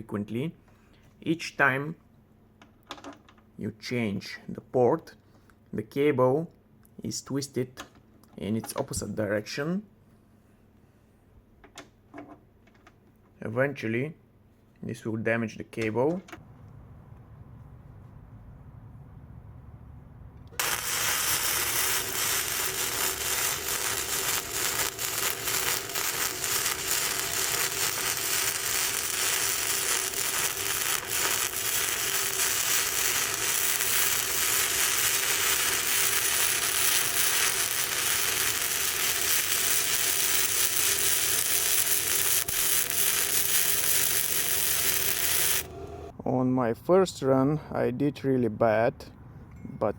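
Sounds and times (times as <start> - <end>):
welding arc crackling and sizzling: 20.6 - 46.1.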